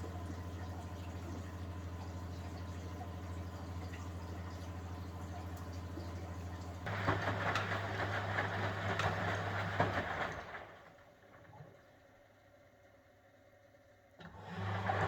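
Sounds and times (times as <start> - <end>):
washing machine motor hum: 0.0 - 10.6.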